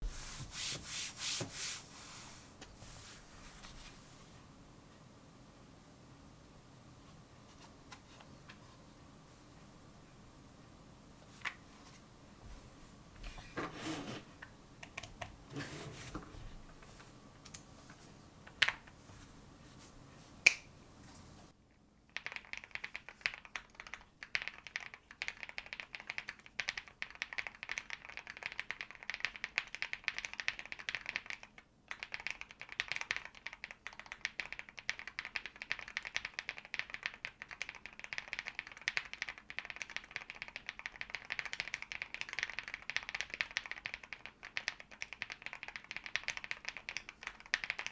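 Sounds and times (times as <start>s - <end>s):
mechanical keyboard typing: 22.2s - 47.9s.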